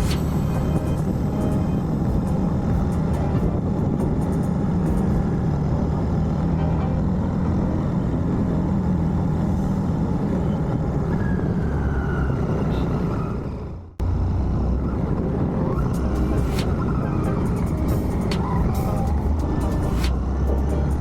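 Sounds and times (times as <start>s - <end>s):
motorcycle engine running: 0.0s - 5.8s
wind noise: 0.0s - 6.4s
road rumble: 0.0s - 21.0s.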